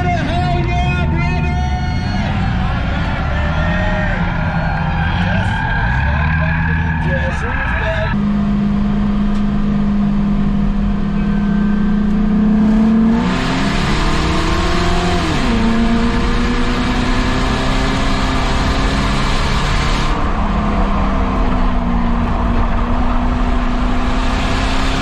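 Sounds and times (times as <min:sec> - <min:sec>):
race car engine running: 0:07.4 - 0:25.0.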